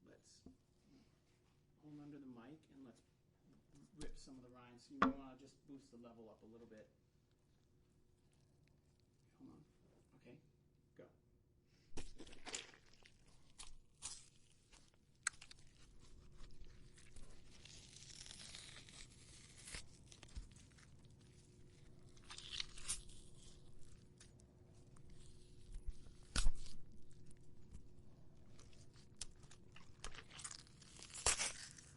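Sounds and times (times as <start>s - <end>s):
melon rind tearing: 12.0s - 31.9s.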